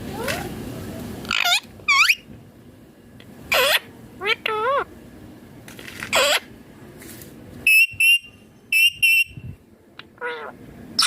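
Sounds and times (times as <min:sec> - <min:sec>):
parakeet chirping: 0:01.3 - 0:02.3, 0:03.5 - 0:04.9, 0:06.1 - 0:06.5, 0:07.7 - 0:09.4, 0:10.2 - 0:11.0.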